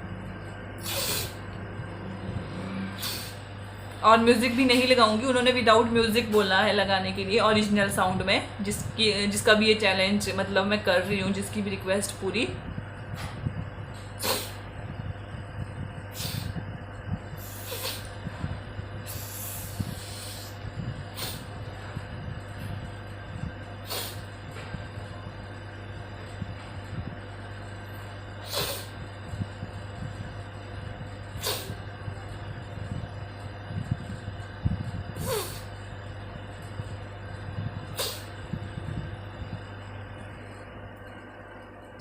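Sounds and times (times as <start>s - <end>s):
steady low hum: 0.0s - 42.0s
woman blowing her nose: 0.8s - 1.4s, 3.0s - 3.4s, 14.2s - 14.6s, 17.4s - 18.1s, 23.8s - 24.3s, 28.4s - 29.0s, 31.4s - 31.8s, 35.2s - 35.7s, 37.9s - 38.3s.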